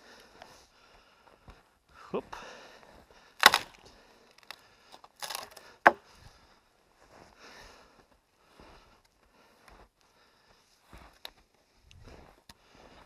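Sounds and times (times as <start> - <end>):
wood rustling: 3.4 - 3.8, 4.4 - 6.0
wood scraping: 4.4 - 6.0
sharp wooden knock: 5.3 - 6.0.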